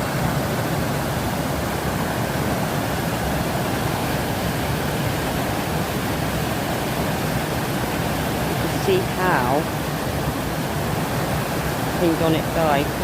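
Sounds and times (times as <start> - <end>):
river pouring down waterfalls: 0.0 - 13.0.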